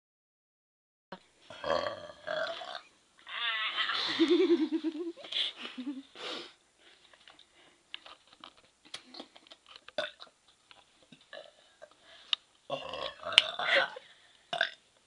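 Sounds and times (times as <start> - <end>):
girl burping loudly: 12.7 - 14.8.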